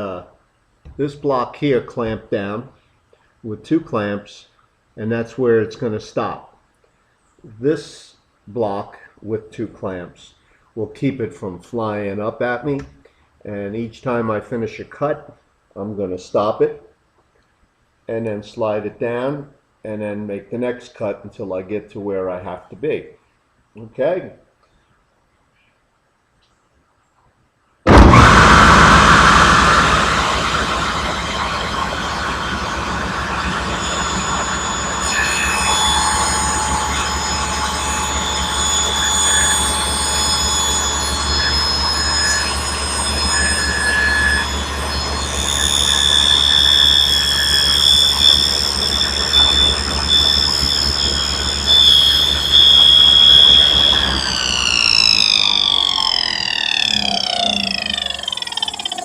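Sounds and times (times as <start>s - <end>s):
saw blade winding down: 27.9s - 59.0s
table saw running and cutting: 27.9s - 59.0s.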